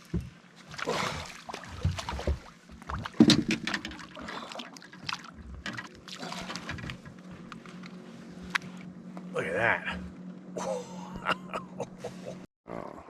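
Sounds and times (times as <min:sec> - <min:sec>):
water splashing and sloshing: 0:00.0 - 0:09.3
knocks and rattles: 0:01.8 - 0:04.1.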